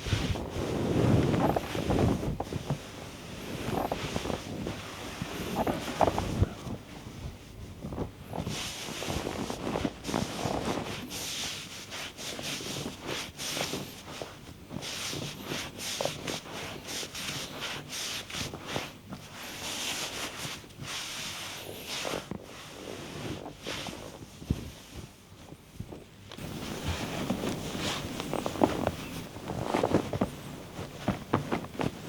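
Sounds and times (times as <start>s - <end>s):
hands rubbing skin: 8.5s - 32.0s
dull thumps: 24.4s - 32.0s.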